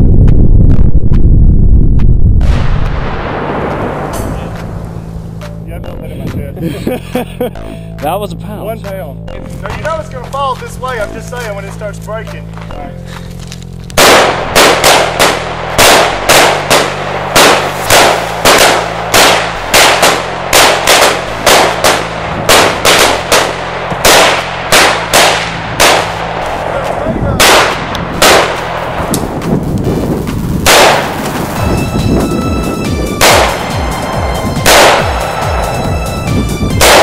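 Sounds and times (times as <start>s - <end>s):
rapid gunfire: 14.0s - 26.8s, 27.4s - 29.1s, 30.6s - 31.6s, 33.2s - 33.8s, 34.6s - 35.7s, 36.8s - 37.0s
loud gunshots: 14.0s - 29.1s, 30.6s - 31.6s, 33.2s - 33.8s, 34.6s - 35.8s, 36.8s - 37.0s.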